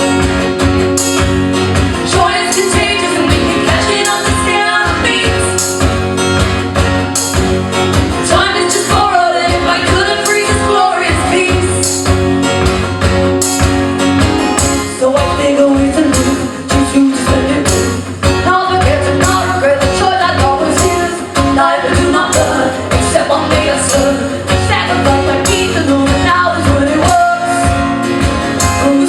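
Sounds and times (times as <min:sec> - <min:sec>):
strummed guitars: 0:00.0 - 0:29.0
person singing: 0:02.0 - 0:05.9, 0:08.2 - 0:12.1, 0:14.8 - 0:28.0, 0:28.6 - 0:29.0.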